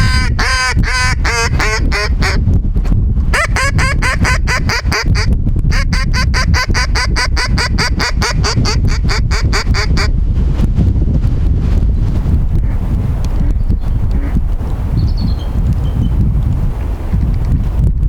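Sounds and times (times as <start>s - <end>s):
duck call quacks: 0.0s - 2.4s, 3.4s - 10.1s
low rumble: 0.0s - 4.4s, 5.0s - 18.0s.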